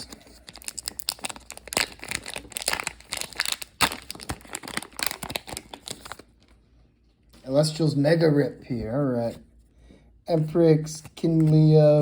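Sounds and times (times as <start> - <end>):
wrapper crinkling and tearing: 0.0 - 6.6.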